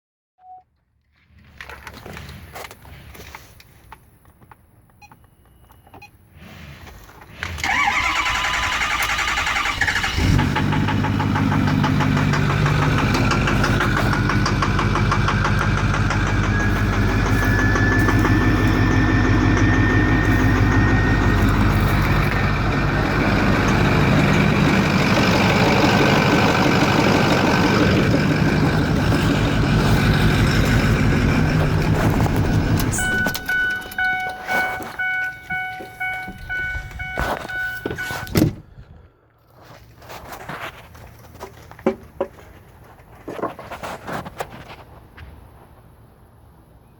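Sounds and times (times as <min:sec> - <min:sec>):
diesel engine cranking and starting: 0:07.3 - 0:39.2
engine whine: 0:07.6 - 0:38.9
diesel engine knocking: 0:09.5 - 0:38.0.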